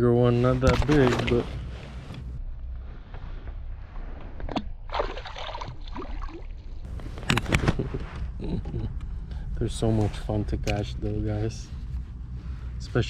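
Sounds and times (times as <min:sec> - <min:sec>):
water sloshing and splashing: 0:04.4 - 0:07.2.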